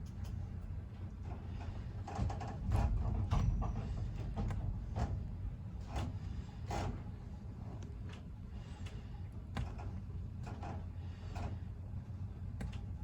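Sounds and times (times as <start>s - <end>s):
low rumble of ship machinery: 0.0s - 13.0s.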